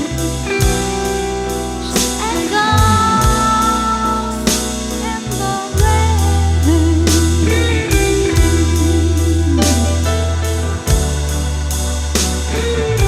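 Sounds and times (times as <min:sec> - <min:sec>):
bass: 0:00.0 - 0:13.0
electric guitar lead: 0:01.4 - 0:07.0
drums with cymbal strikes: 0:04.4 - 0:10.1.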